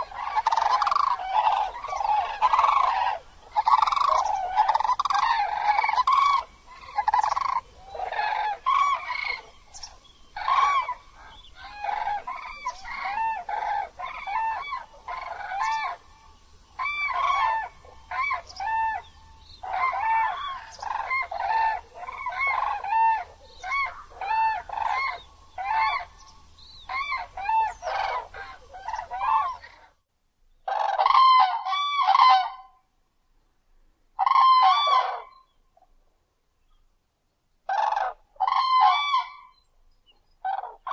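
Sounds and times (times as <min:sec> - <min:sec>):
crane honking calls: 0:00.0 - 0:09.6.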